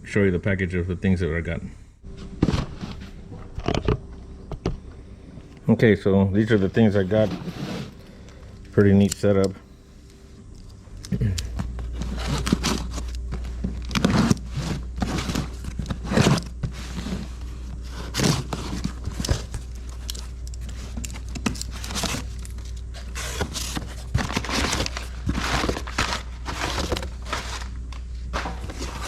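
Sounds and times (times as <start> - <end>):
steady low hum: 0.0 - 29.0
packaging rustling and crinkling: 11.7 - 29.0.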